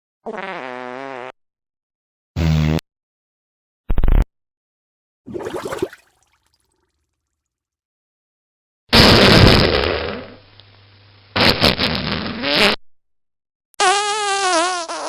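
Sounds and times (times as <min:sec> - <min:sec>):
fart sounds: 0:00.2 - 0:01.4, 0:02.4 - 0:02.8, 0:05.3 - 0:06.1, 0:08.9 - 0:10.4, 0:11.4 - 0:12.8, 0:13.8 - 0:15.0.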